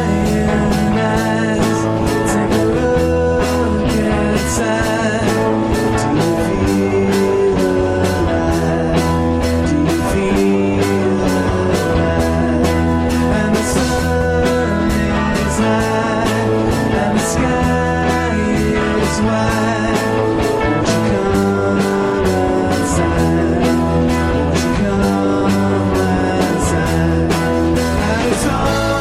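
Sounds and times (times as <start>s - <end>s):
psychedelic rock song: 0.0s - 29.0s.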